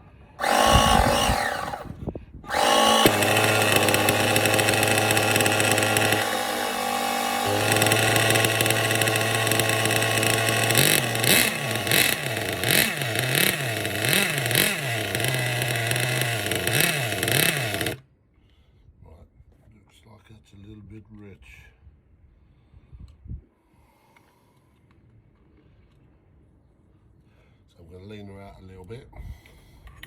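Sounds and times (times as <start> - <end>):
small two-stroke engine revving: 0.4 - 18.0.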